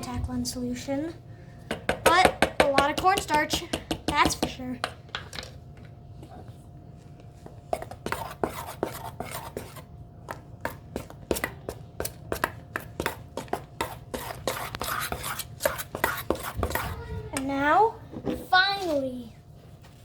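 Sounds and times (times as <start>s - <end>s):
utensil scraping a mixing bowl: 7.7s - 9.9s, 12.3s - 17.1s.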